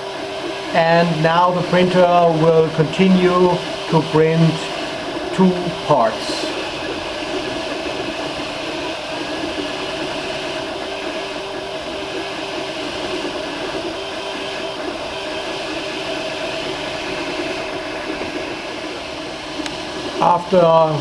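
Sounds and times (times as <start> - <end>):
three d printer whirring: 0.0 - 21.0
stepper motors changing pitch: 0.4 - 21.0.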